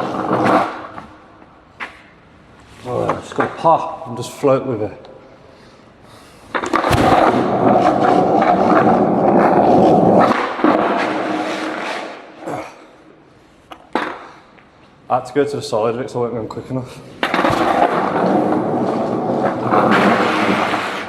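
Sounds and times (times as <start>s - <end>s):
skateboard wheels rolling: 0.0s - 1.2s, 6.5s - 12.2s, 17.2s - 21.0s
skateboard clack: 17.2s - 21.0s.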